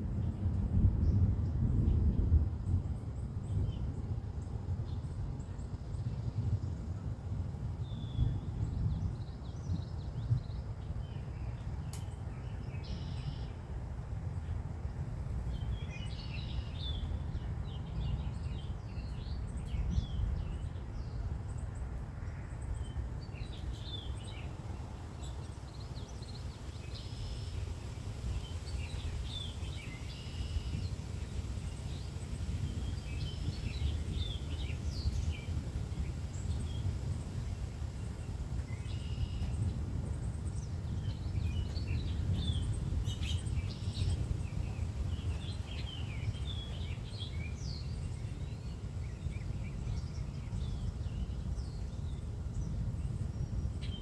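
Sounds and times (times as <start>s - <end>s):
low rumble of wind: 0.0s - 54.0s
songbirds chirping and singing: 22.3s - 39.8s, 40.6s - 54.0s.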